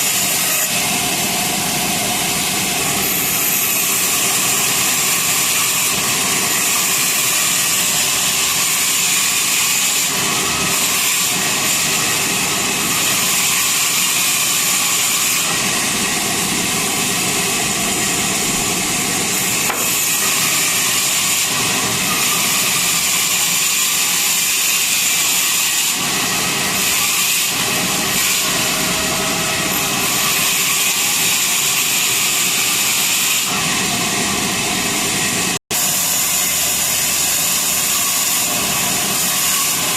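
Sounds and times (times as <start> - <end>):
saw cutting through log: 0.0 - 39.9.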